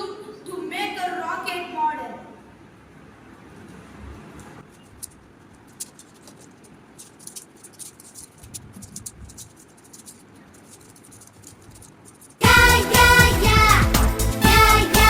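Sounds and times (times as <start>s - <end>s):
puzzle cube clicking as turned: 4.6s - 12.4s.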